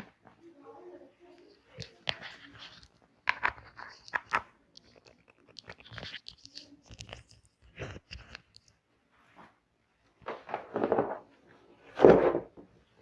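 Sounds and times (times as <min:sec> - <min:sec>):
clicks and taps of handling: 0:01.7 - 0:08.8.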